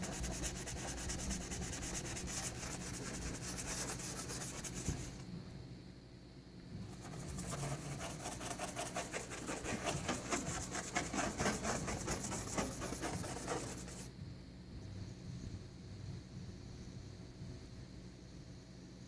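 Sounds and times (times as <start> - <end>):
hand scrubbing car paint: 0.0 - 5.2, 7.0 - 14.1.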